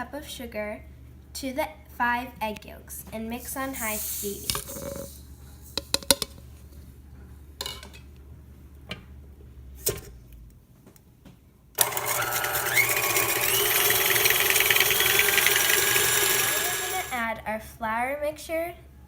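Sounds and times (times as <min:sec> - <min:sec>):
electric mixer whining: 0:11.8 - 0:17.2.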